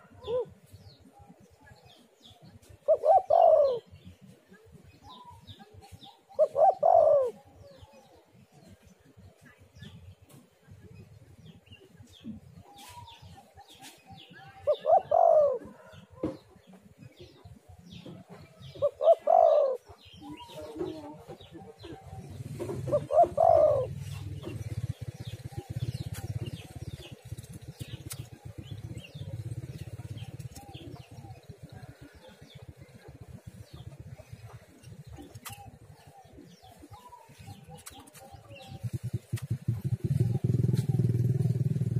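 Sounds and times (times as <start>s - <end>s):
dove cooing: 0.0s - 0.6s, 2.8s - 4.2s, 5.1s - 8.2s, 14.5s - 16.1s, 18.0s - 41.9s.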